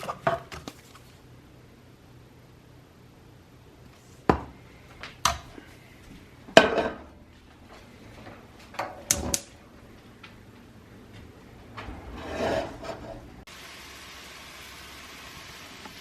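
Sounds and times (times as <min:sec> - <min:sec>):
dishes and utensils clattering: 0:06.6 - 0:07.2.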